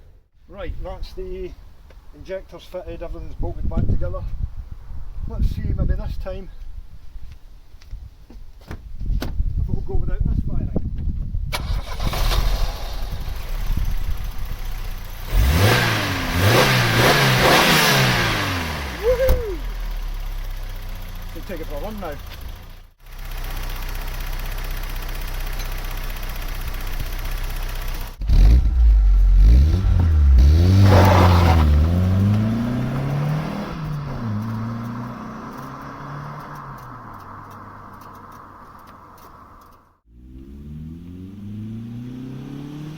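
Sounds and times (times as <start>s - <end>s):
car engine revving: 11.6s - 22.7s, 26.4s - 42.9s.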